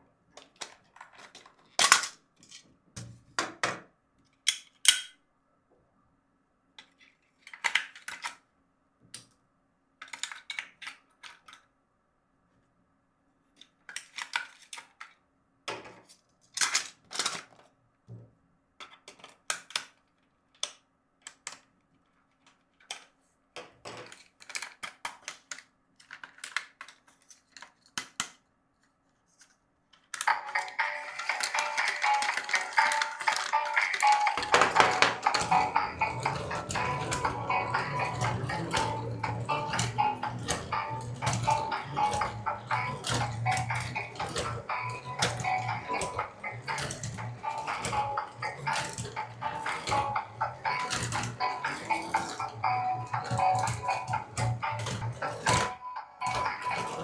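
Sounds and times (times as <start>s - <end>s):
plastic parts clicking and snapping: 0.3s - 2.6s, 4.3s - 5.2s, 6.8s - 8.4s, 10.0s - 11.7s, 13.6s - 15.2s, 18.8s - 23.2s, 23.9s - 28.4s, 29.4s - 57.0s.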